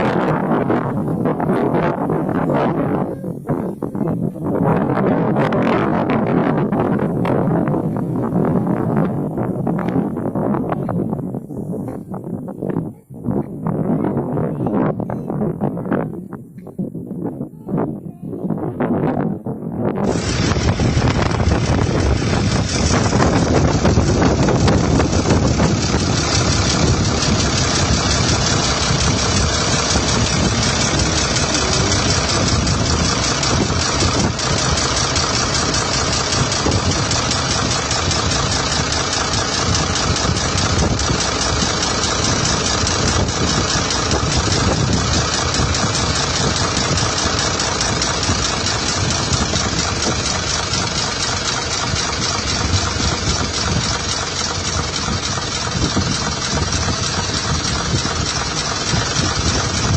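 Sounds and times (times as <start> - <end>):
loud vehicle engine running: 0.0 - 12.8, 19.8 - 59.9.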